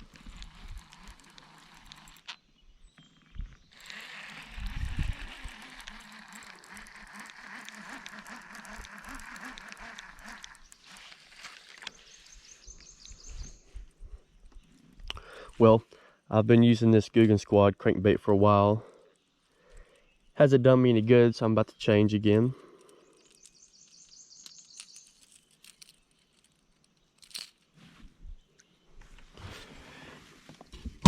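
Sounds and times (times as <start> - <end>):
fishing reel whirring: 0.0 - 2.4, 3.6 - 13.6
small clicks: 0.0 - 12.1, 22.6 - 27.7.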